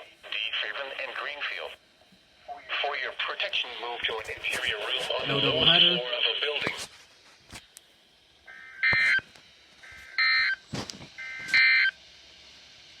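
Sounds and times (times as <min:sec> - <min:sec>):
warbling two-tone data bursts: 0:08.5 - 0:09.2.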